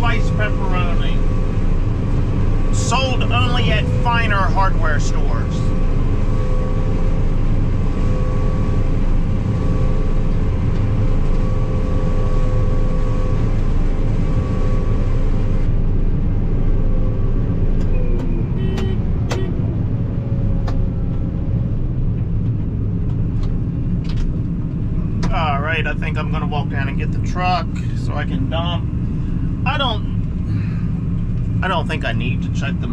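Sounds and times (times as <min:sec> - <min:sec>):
combine harvester droning: 0:00.0 - 0:32.9.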